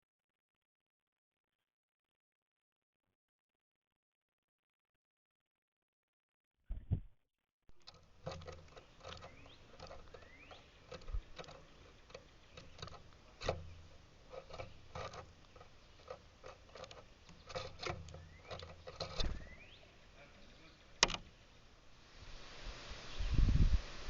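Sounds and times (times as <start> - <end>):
small birds chirping: 7.8 - 21.8, 23.0 - 23.6.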